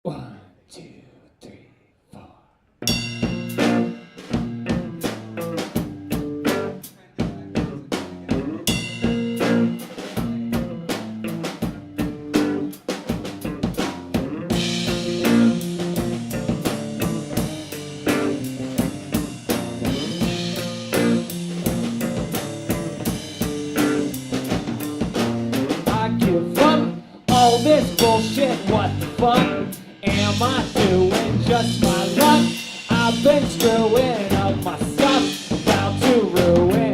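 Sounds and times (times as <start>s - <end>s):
rock band playing: 2.8s - 36.9s.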